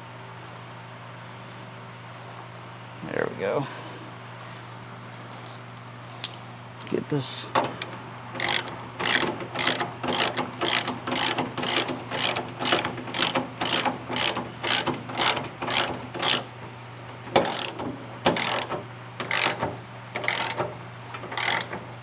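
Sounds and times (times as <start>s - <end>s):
ratchet wrench clicking: 7.8s - 16.5s, 17.4s - 19.6s, 20.2s - 20.7s, 21.3s - 21.8s.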